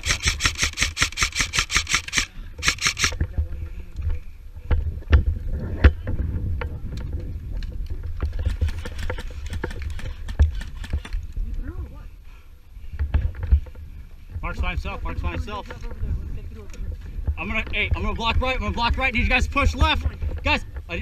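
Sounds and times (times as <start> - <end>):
airsoft gun firing full auto: 0.0 - 3.2
low rumble of movement: 2.2 - 21.0
sharp clicks and knocks: 4.7 - 11.2.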